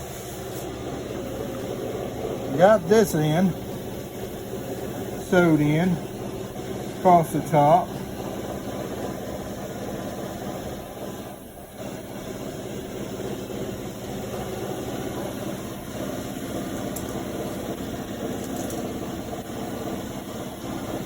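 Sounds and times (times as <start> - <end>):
welder crackling: 0.0 - 13.5, 14.3 - 19.9.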